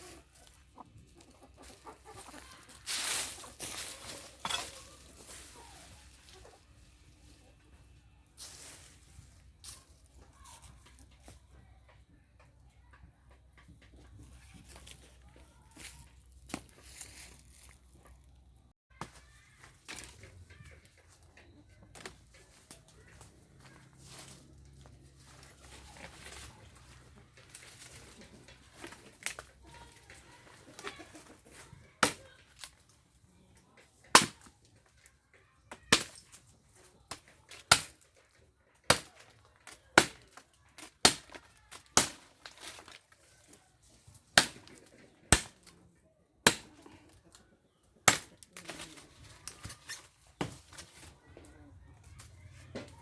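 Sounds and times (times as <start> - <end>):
chickens clucking: 0.0 - 8.0, 20.3 - 32.4.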